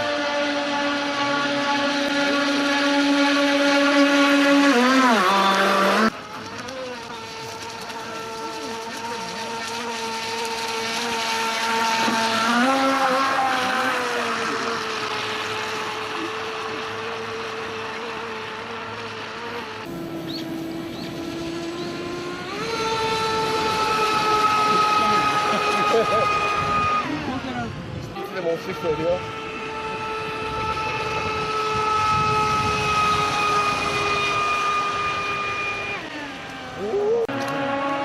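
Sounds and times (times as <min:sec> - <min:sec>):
electric motor whining: 0:00.0 - 0:38.0.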